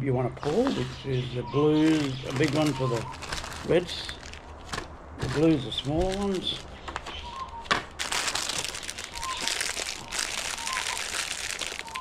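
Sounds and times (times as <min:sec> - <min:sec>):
plastic packaging crinkling: 0:01.8 - 0:12.0.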